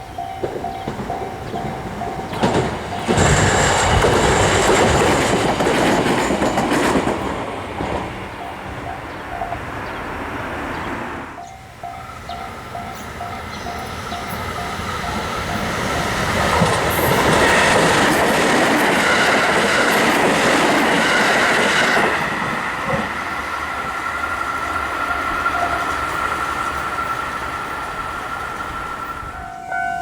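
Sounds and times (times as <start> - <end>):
railway crossing bell clanging: 0.0 - 30.0
train wheels rolling on rails: 0.0 - 30.0.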